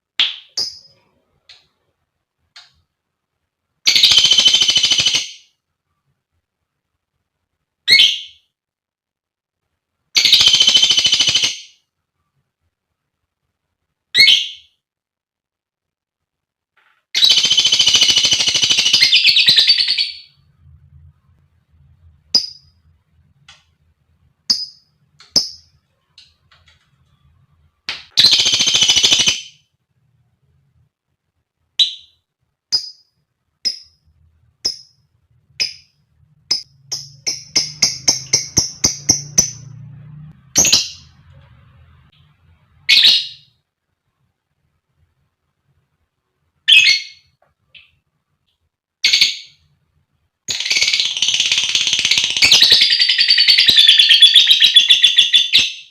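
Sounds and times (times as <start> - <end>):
lovebird chirping: 0.3 - 1.0, 3.9 - 5.5, 7.8 - 8.5, 14.1 - 14.8, 17.2 - 20.6, 22.2 - 23.0, 24.5 - 25.8, 28.2 - 29.6, 31.8 - 34.0, 35.6 - 39.8, 40.5 - 43.6, 46.7 - 48.0, 50.5 - 55.9.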